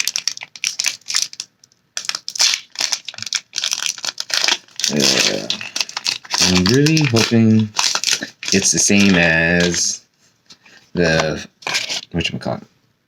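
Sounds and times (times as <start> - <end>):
foil wrapper tearing and crinkling: 0.0 - 9.9.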